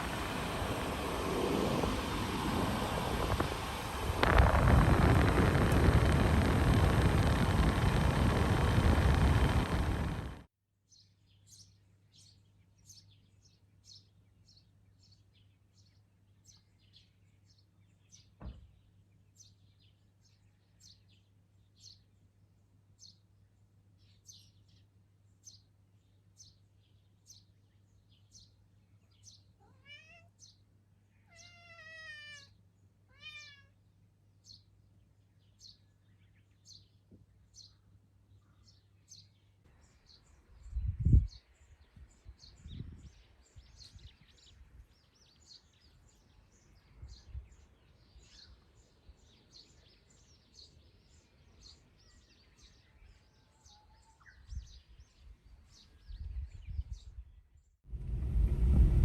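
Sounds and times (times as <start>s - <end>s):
cat meowing: 29.6s - 30.4s, 31.3s - 33.8s
faint high bird chirps: 35.4s - 57.4s.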